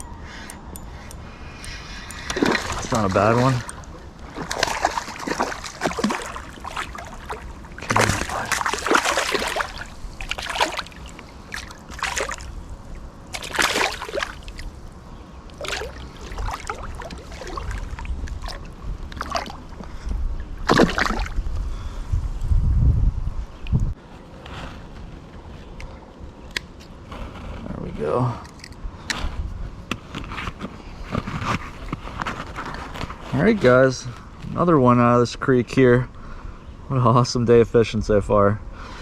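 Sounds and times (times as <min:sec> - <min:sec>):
creek water splashing: 0:01.8 - 0:19.8, 0:20.6 - 0:21.4.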